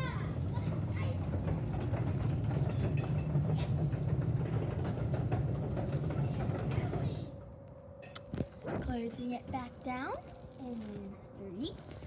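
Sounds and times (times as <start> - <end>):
garage door rolling in tracks: 0.8 - 7.2.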